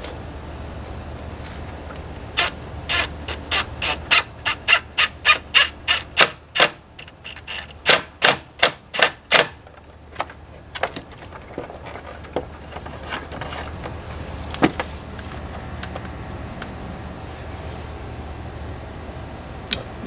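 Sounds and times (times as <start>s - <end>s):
wire brush scrubbing metal: 2.4s - 7.9s.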